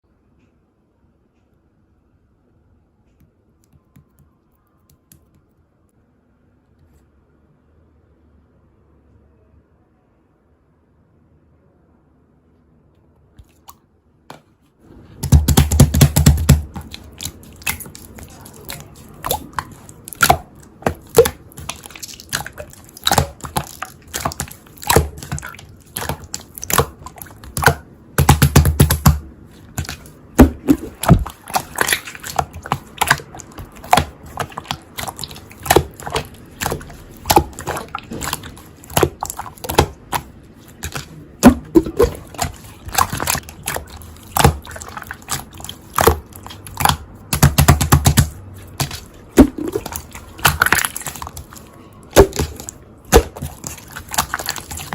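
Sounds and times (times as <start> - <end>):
slime squishing by hand: 13.4 - 54.9.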